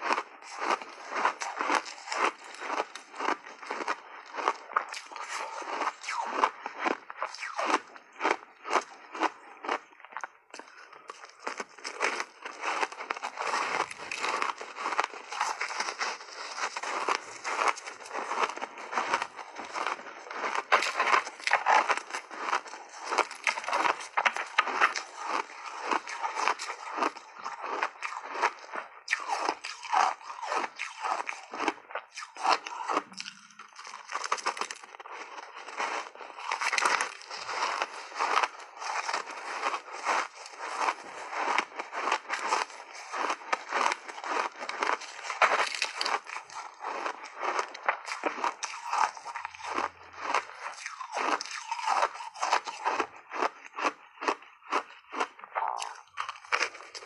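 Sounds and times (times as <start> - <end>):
ice being chewed: 0.0 - 57.0.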